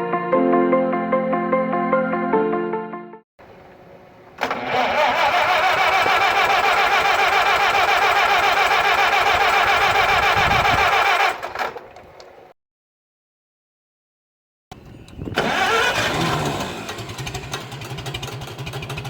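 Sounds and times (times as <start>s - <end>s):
tractor engine running: 3.4s - 12.5s, 14.7s - 19.0s.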